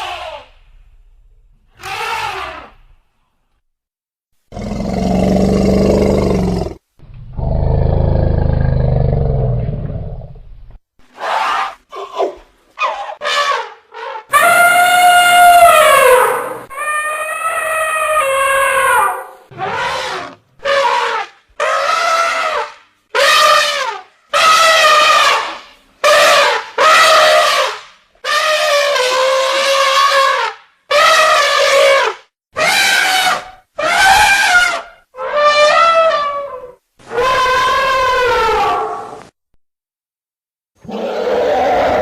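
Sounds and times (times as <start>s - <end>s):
elephant trumpeting: 12.8s - 39.2s.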